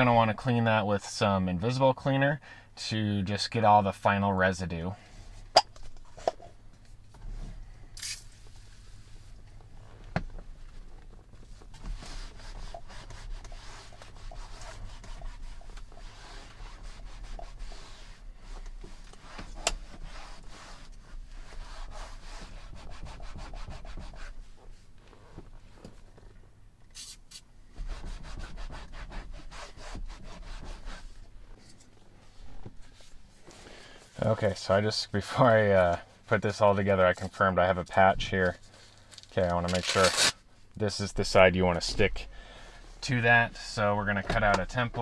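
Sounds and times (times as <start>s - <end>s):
short hiss: 8.0s - 8.5s, 27.0s - 27.4s
cloth rubbing on plastic: 11.9s - 25.4s, 27.0s - 31.6s, 38.6s - 40.3s.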